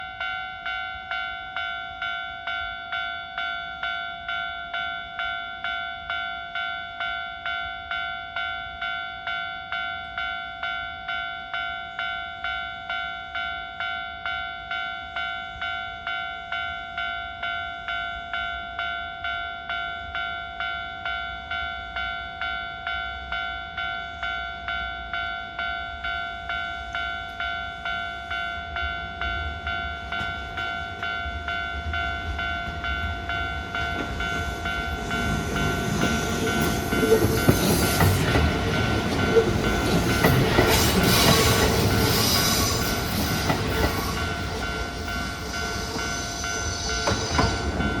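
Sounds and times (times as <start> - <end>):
level-crossing bell dinging: 0.0 - 48.0
train rumble: 26.9 - 48.0.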